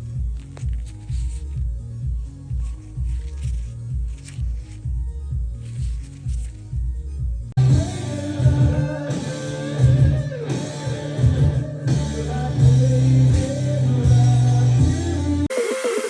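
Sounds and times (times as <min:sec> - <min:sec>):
rock music with guitar: 0:07.6 - 0:15.4.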